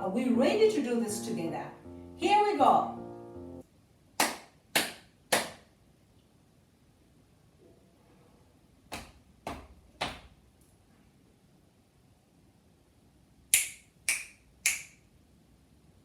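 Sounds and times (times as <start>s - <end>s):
hand slaps on body: 4.2s - 5.6s, 8.9s - 10.3s.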